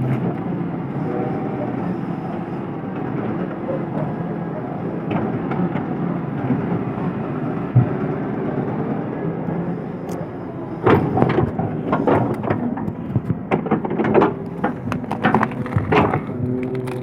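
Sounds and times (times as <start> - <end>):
diesel engine running: 0.0 - 17.0
wood cracking and snapping: 10.9 - 17.0.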